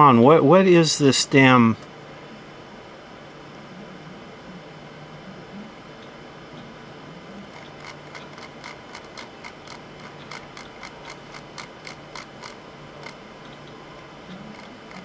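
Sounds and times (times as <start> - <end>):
faint low hum: 0.0 - 15.0
rapid light sharp clicks: 7.5 - 15.0.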